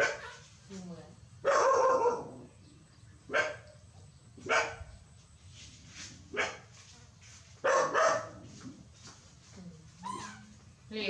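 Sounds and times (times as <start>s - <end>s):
animal barking: 0.0s - 0.4s, 1.4s - 2.6s, 3.3s - 3.8s, 4.4s - 4.9s, 7.6s - 8.6s.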